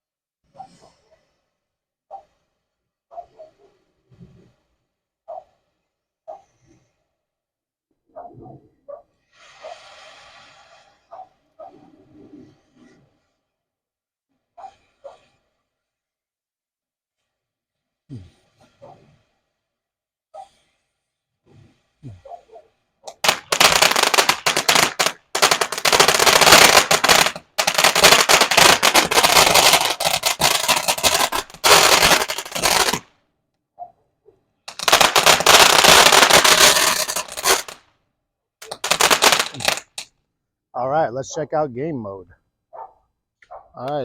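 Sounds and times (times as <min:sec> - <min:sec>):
firework fountain crackling: 0:23.1 - 0:33.1, 0:34.7 - 0:37.8, 0:38.6 - 0:40.0.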